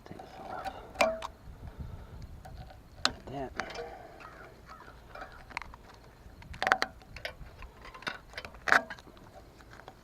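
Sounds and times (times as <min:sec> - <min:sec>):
clicks and knocks of small parts: 0:02.4 - 0:10.0.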